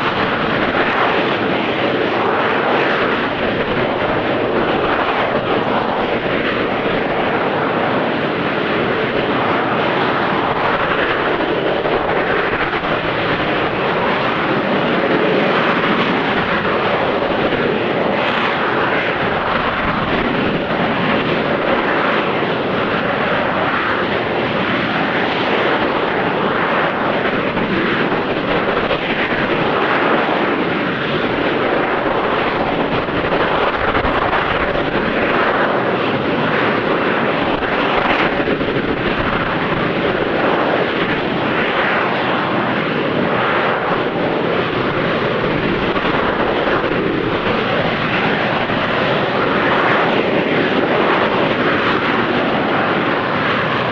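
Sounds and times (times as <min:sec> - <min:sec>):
jet engine roaring while hovering: 0:00.0 - 0:53.9.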